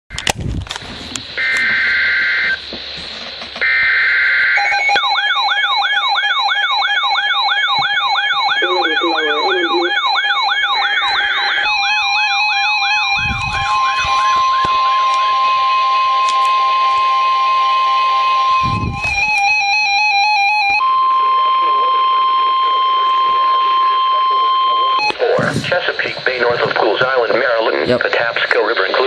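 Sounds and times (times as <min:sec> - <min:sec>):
steady warning alarm tone: 0:01.2 - 0:02.8, 0:03.6 - 0:27.3
sweeping siren-like alarm: 0:01.4 - 0:02.8, 0:03.6 - 0:25.2
steady beeping tones: 0:04.4 - 0:17.3
warbling digital data bursts: 0:08.4 - 0:15.0.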